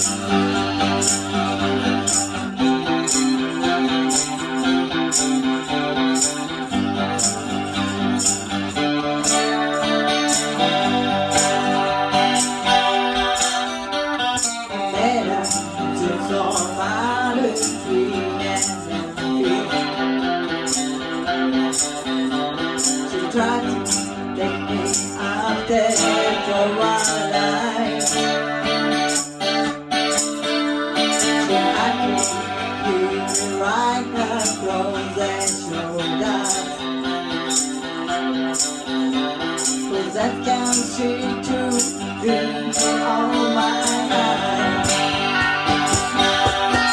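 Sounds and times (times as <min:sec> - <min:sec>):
tambourine strikes: 0:00.0 - 0:17.0, 0:17.6 - 0:19.9, 0:20.6 - 0:24.2, 0:24.9 - 0:25.3, 0:29.0 - 0:33.8, 0:34.4 - 0:34.8, 0:37.4 - 0:40.0, 0:41.7 - 0:43.1, 0:43.8 - 0:46.9
live country-rock band: 0:00.0 - 0:46.9
person singing lead: 0:00.0 - 0:46.9.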